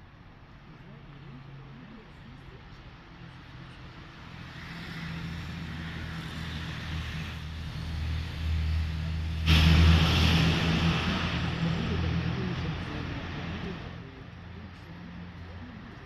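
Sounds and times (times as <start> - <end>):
diesel locomotive engine running: 3.9 - 16.0
loud rush of noise: 7.0 - 14.1.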